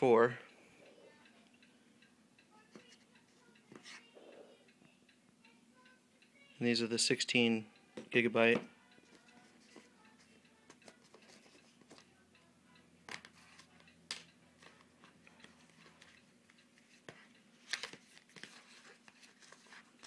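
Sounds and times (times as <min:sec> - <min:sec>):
soft clicks and rustles: 0:13.1 - 0:20.0.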